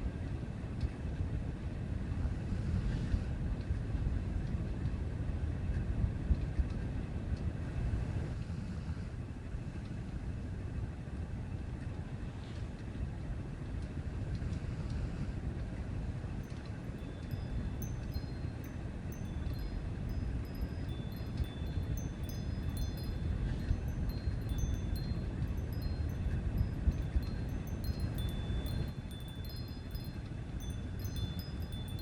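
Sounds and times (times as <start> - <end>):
steady low rumble: 16.4 - 32.0
wind chimes tinkling: 16.4 - 32.0.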